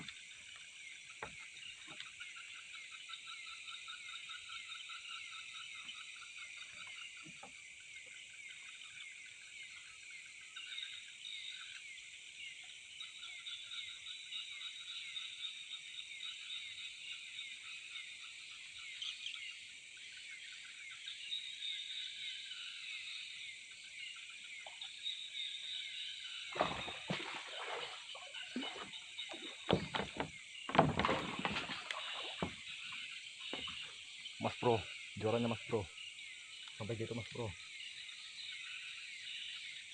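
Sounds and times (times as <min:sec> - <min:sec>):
insects and frogs trilling: 0:00.0 - 0:39.9
loud knocks and splashes: 0:26.5 - 0:33.9.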